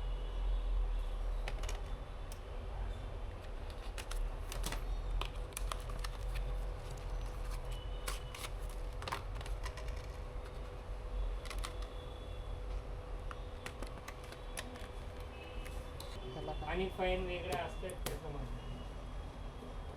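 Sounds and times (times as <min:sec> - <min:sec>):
clicks of computer parts handled: 0:03.6 - 0:10.6, 0:11.4 - 0:11.9, 0:13.6 - 0:16.2.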